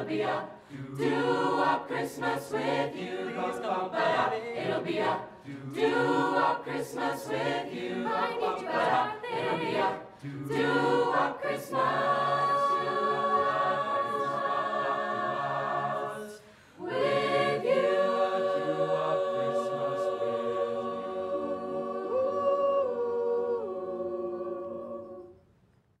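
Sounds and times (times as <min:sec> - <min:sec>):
choir singing held chords: 0:00.0 - 0:25.5.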